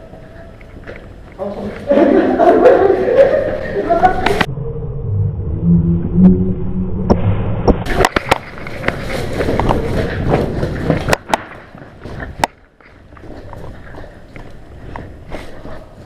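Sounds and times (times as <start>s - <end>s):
rustling movement: 7.9s - 16.0s.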